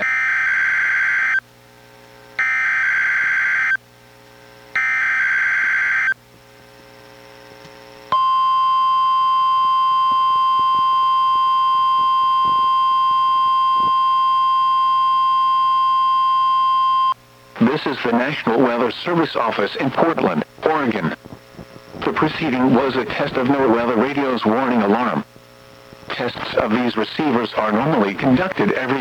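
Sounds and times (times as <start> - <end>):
steady high alarm tone: 2.4 - 3.8, 8.1 - 17.2.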